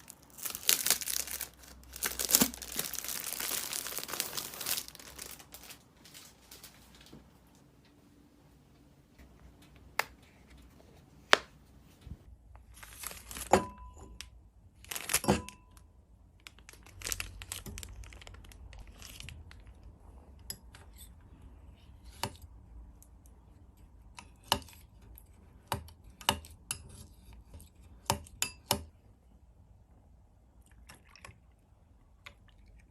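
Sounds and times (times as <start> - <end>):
rustling and crinkling: 0.0 - 8.2, 16.4 - 19.9.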